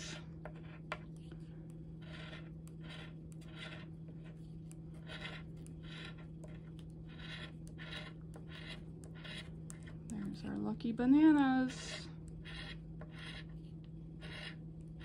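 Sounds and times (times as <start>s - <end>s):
scratching lottery ticket: 1.8s - 10.1s, 11.6s - 13.6s, 14.2s - 15.0s.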